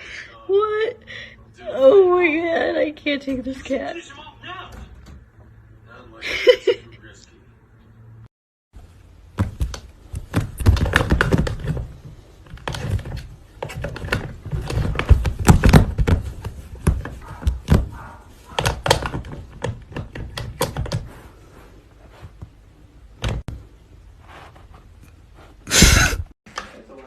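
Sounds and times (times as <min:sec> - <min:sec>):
knocks and thumps on hard surfaces: 0:09.3 - 0:21.1.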